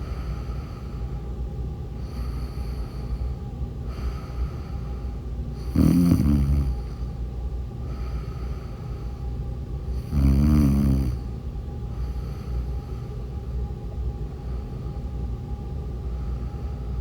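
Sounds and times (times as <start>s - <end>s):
woman snoring: 5.6s - 6.9s, 10.0s - 11.2s.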